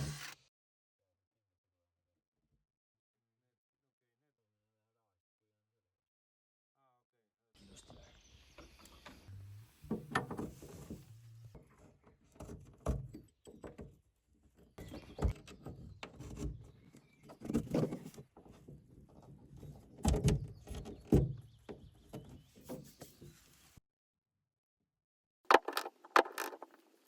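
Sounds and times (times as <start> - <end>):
hose fittings knocking and clicking: 25.5 - 26.8.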